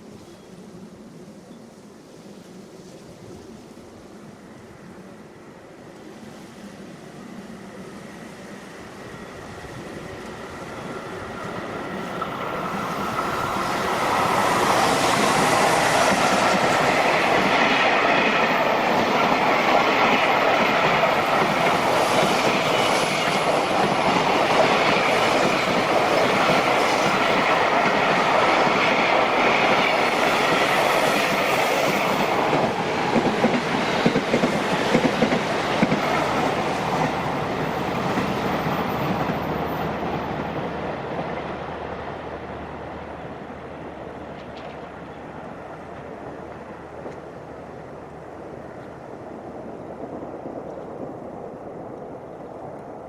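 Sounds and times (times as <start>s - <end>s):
freight train wagons rumbling: 7.3s - 53.0s
train wheel clacks: 10.0s - 41.5s.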